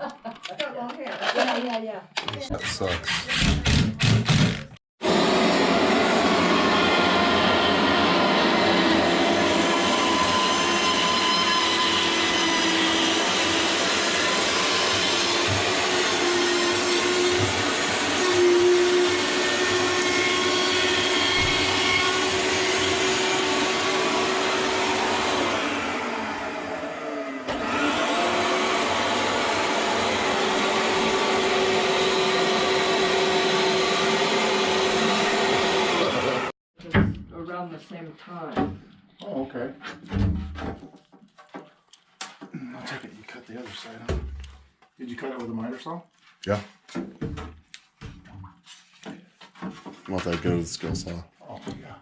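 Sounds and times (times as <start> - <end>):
vacuum motor whining: 5.0 - 36.5.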